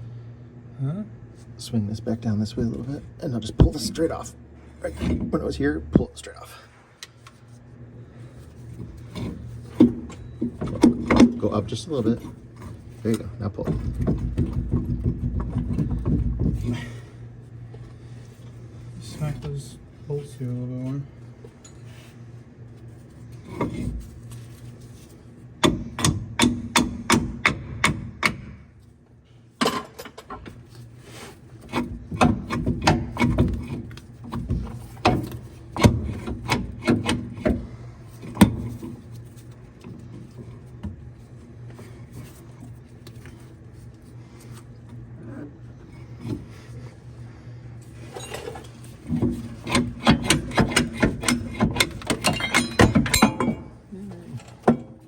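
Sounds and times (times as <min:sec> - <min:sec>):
steady low hum: 0:00.0 - 0:55.0
hammer striking bolts: 0:49.7 - 0:53.7.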